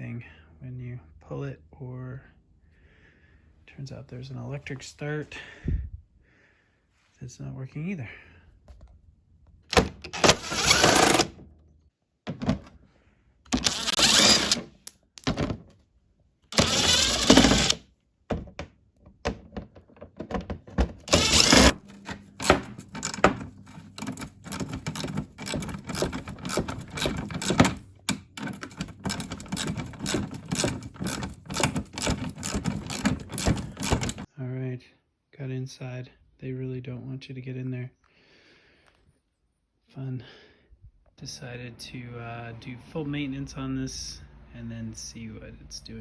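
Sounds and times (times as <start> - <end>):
recoil starter cord pulled: 9.7 - 11.4, 13.5 - 14.9, 16.5 - 17.8, 21.0 - 34.3
fast ratcheting clicks: 13.6 - 14.6, 16.5 - 17.8, 21.1 - 34.3.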